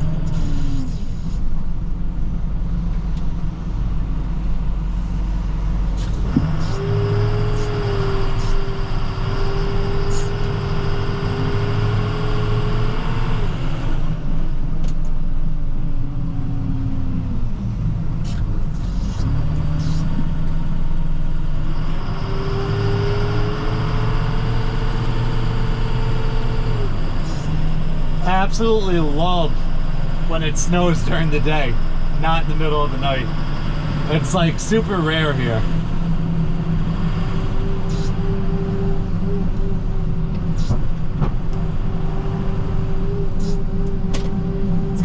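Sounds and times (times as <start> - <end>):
truck engine rumbling: 0.0 - 45.0
steady whine: 26.8 - 45.0.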